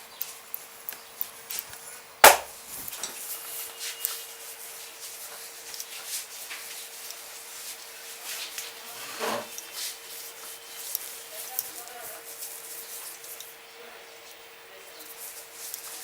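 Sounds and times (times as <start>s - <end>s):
sharp hand slap: 2.2s - 2.5s
rubbing and scratching on scalp: 3.8s - 8.8s, 9.7s - 13.4s.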